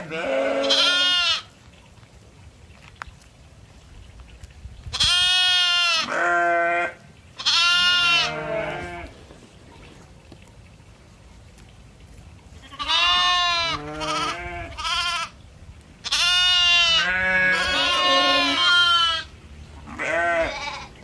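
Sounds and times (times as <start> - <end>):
goats bleating: 0.0 - 1.6, 5.0 - 9.3, 12.6 - 15.3, 16.0 - 19.3, 19.9 - 21.0.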